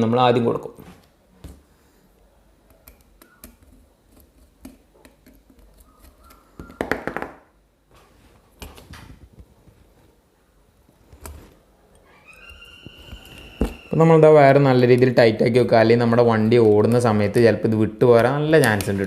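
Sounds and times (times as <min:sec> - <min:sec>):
clicks and taps of handling wires: 0:02.7 - 0:07.1, 0:18.5 - 0:19.0.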